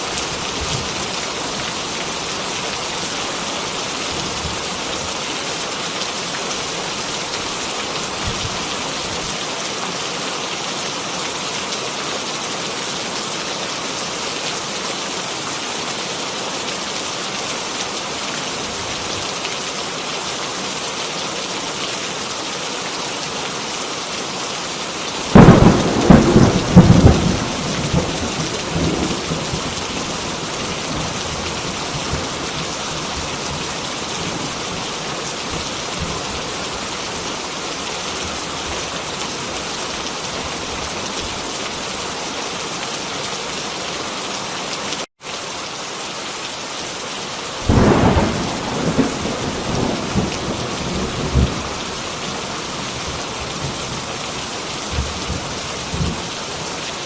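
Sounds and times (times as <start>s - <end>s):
heavy rain falling: 0.0s - 57.0s
thunderclap rumbling: 25.3s - 33.6s, 47.7s - 51.7s.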